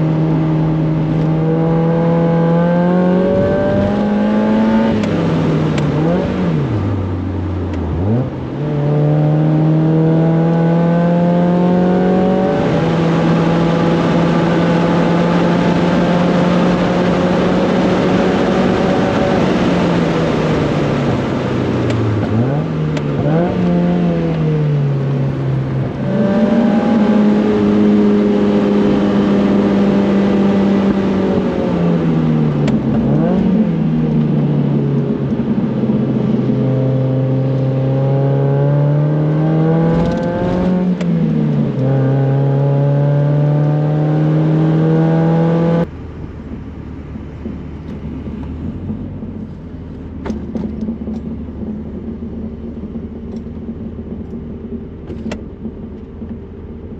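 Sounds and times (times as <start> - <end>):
car engine revving: 0.0 - 56.9
low engine rumble: 45.8 - 56.9.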